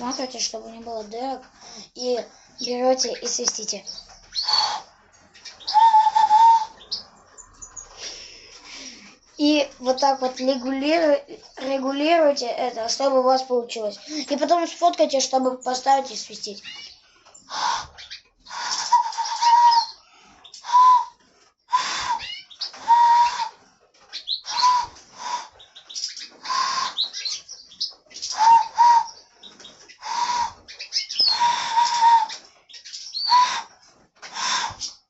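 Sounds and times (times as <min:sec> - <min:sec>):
hand whistle hoots: 0:05.7 - 0:06.8, 0:18.5 - 0:20.0, 0:20.7 - 0:23.6, 0:24.5 - 0:25.5, 0:30.0 - 0:30.6, 0:31.3 - 0:32.3, 0:33.2 - 0:33.7, 0:34.4 - 0:34.8.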